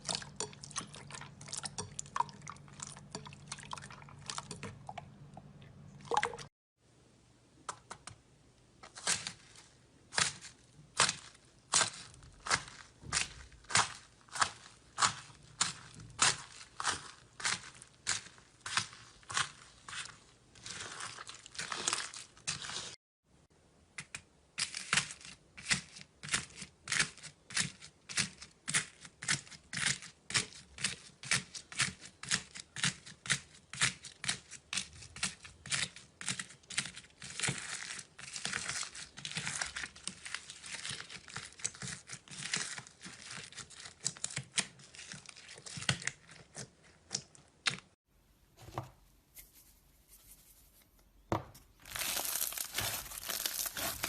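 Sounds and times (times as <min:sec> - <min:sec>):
knife cutting soap: 0:24.0 - 0:48.0, 0:50.8 - 0:54.0.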